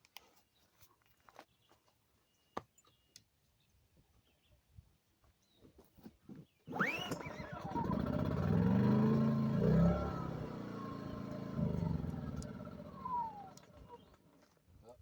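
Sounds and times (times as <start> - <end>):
generator engine starting and running: 6.7 - 14.6.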